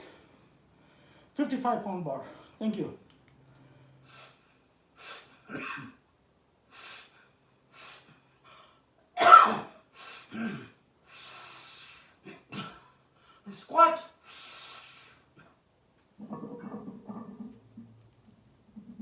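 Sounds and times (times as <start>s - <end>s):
man coughing: 5.5s - 6.0s, 9.2s - 10.8s, 12.3s - 12.8s.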